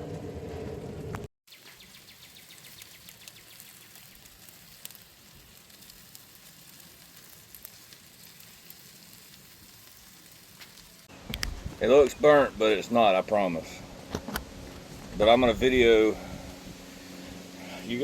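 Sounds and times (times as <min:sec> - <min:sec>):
low hum: 0:00.0 - 0:01.3, 0:11.1 - 0:18.0
meat sizzling and crackling: 0:01.5 - 0:18.0.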